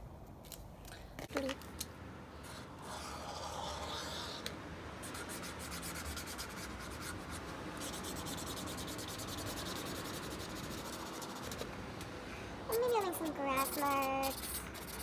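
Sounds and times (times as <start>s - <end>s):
marker drawing on paper: 2.4s - 11.7s, 12.7s - 15.0s.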